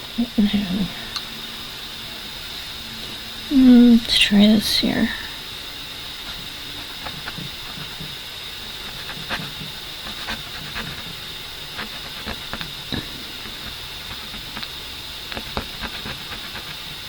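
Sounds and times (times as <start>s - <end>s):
steady hiss: 0.0s - 17.0s.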